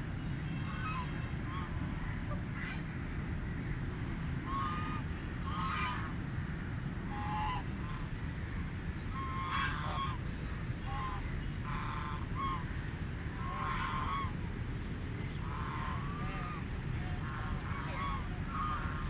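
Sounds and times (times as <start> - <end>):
ducks quacking: 4.5 - 6.1, 7.1 - 8.1, 9.1 - 10.2, 10.8 - 12.7, 13.3 - 14.4, 15.3 - 19.0.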